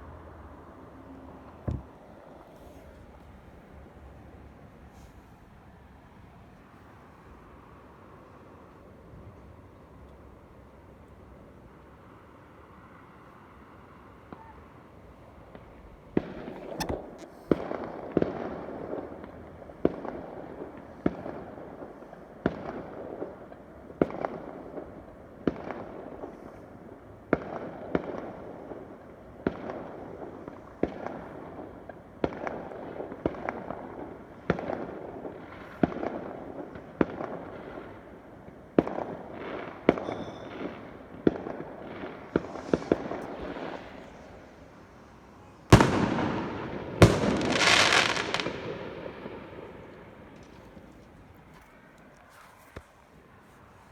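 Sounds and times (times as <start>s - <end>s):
fireworks bangs: 38.8s - 50.9s.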